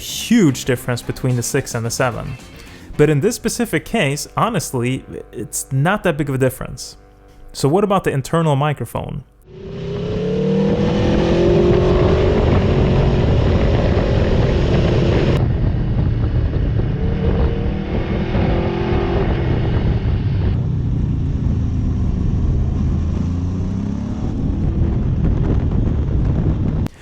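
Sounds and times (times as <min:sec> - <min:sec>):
motorcycle engine accelerating: 0:09.4 - 0:27.0
wind rushing over microphone: 0:09.6 - 0:26.9.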